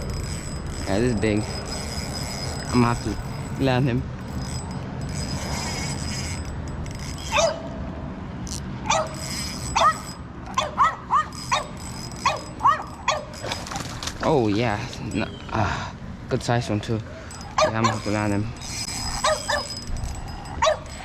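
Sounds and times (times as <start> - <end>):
dog yipping: 7.3 - 7.7, 8.8 - 13.4, 17.5 - 18.1, 18.9 - 19.8, 20.6 - 21.0.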